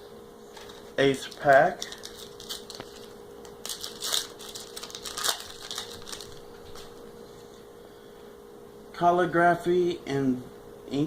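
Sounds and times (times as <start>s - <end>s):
foil wrapper tearing and crinkling: 0.6s - 7.0s.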